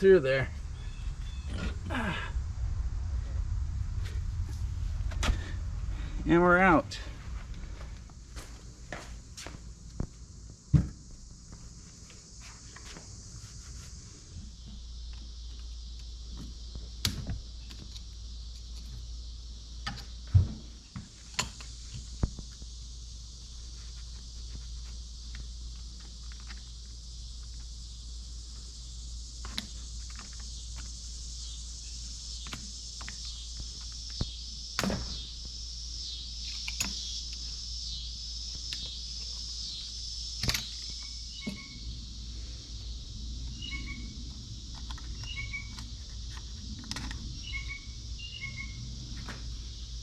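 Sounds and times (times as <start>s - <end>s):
insect chirring: 0.0s - 50.0s.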